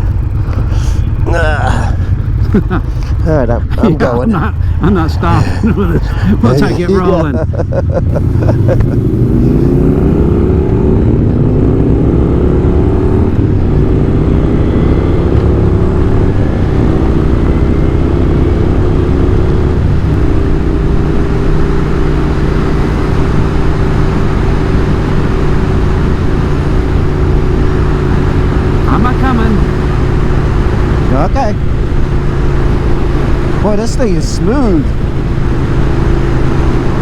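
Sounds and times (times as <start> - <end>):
motorcycle engine shifting gears: 7.4 - 37.0.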